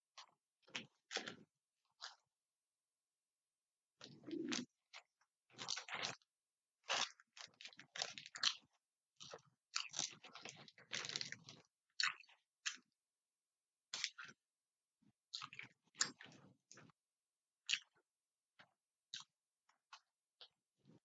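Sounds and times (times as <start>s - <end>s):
crunchy chewing of food: 2.0s - 2.2s, 4.0s - 12.9s, 15.3s - 16.9s, 19.1s - 19.3s.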